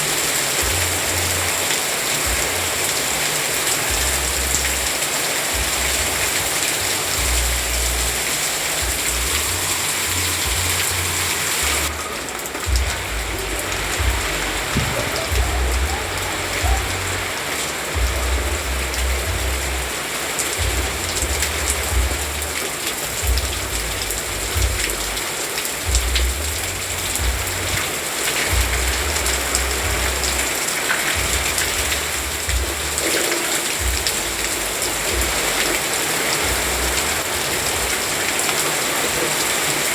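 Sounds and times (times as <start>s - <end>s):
steady rain falling: 0.0s - 39.9s
low rumble: 12.7s - 17.3s, 18.0s - 19.9s.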